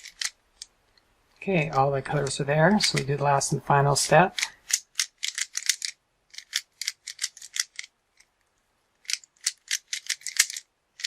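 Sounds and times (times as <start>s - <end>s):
puzzle cube plastic clicks: 0.0s - 1.1s, 4.3s - 11.0s.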